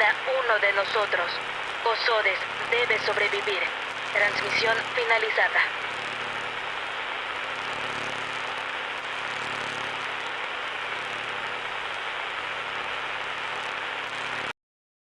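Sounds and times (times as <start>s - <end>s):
broadcast static hiss: 0.0s - 14.6s
low hum: 0.8s - 14.5s.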